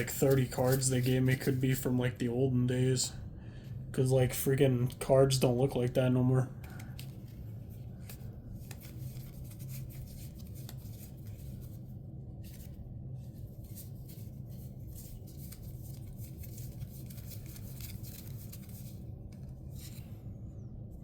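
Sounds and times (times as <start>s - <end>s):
trading cards rustling and clicking: 0.0s - 2.2s, 6.6s - 20.2s
steady low hum: 0.0s - 21.0s.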